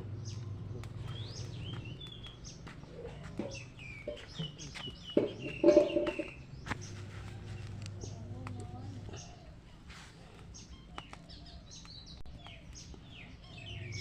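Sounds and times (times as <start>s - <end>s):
birds chirping: 0.0s - 14.0s
steady low hum: 0.0s - 14.0s
low bird call: 0.2s - 14.0s.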